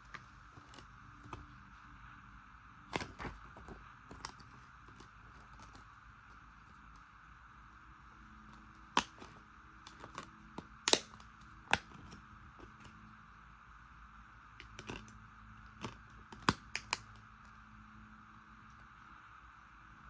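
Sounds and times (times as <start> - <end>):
plastic case clicks and snaps: 0.0 - 1.6, 2.9 - 5.8, 8.5 - 12.9, 14.6 - 17.2.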